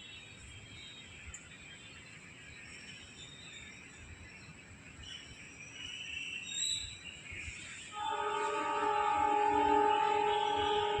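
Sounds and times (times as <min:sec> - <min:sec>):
locomotive horn blast: 0:08.0 - 0:11.0.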